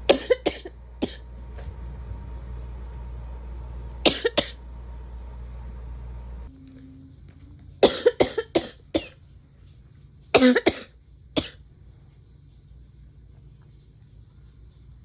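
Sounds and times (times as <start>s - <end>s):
person coughing: 0.1s - 1.3s, 4.0s - 4.6s, 7.8s - 9.2s, 10.4s - 11.6s.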